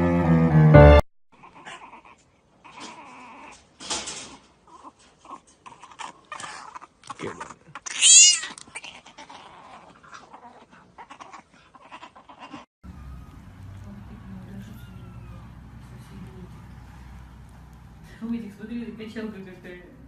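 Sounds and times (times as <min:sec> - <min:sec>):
cat meowing: 0:07.8 - 0:09.0, 0:14.6 - 0:15.6.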